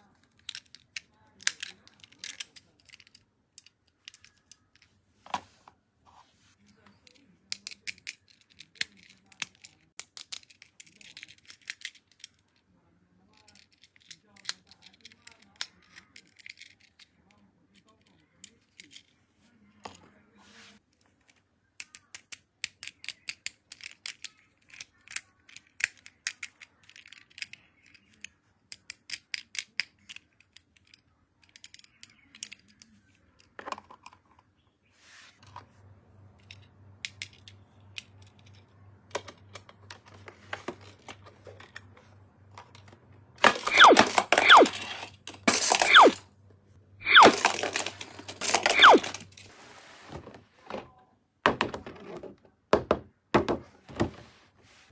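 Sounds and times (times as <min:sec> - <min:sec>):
tape or plastic ripping: 0:43.4 - 0:46.2, 0:47.0 - 0:49.4.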